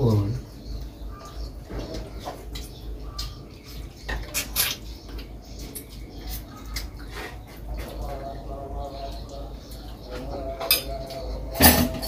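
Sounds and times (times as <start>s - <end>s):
plates and cutlery clinking: 10.1s - 12.0s.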